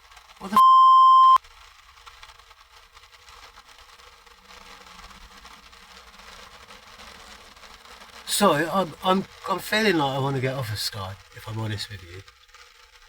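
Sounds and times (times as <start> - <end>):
censor bleep: 0.5 - 1.4
faint background hiss: 8.0 - 12.2.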